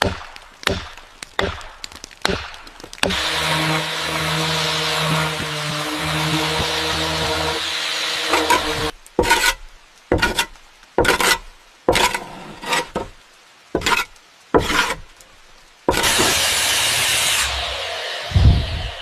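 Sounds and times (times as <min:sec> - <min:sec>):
hand tool strokes on wood: 0:03.1 - 0:13.2, 0:13.8 - 0:15.2, 0:15.9 - 0:19.0.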